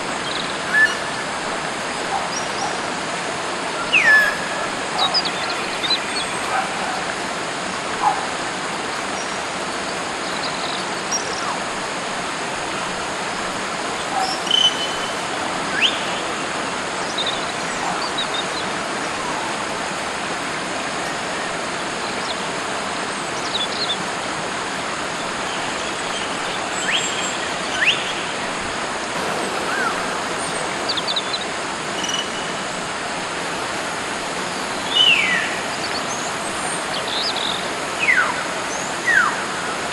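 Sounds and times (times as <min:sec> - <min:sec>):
birds whistling calls: 0:00.3 - 0:01.1, 0:14.2 - 0:16.2, 0:26.2 - 0:28.6, 0:29.2 - 0:32.9, 0:34.9 - 0:36.2, 0:36.9 - 0:39.5
steady hiss: 0:24.0 - 0:39.9.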